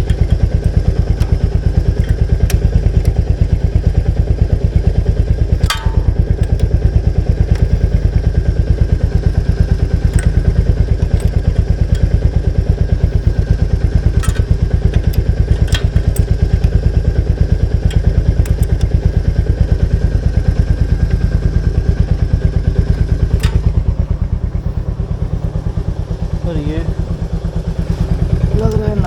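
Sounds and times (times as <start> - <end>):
sharp clicks: 0.0 - 3.5, 5.6 - 8.2, 9.6 - 21.9, 22.8 - 23.9
motorcycle engine idling: 0.0 - 29.0.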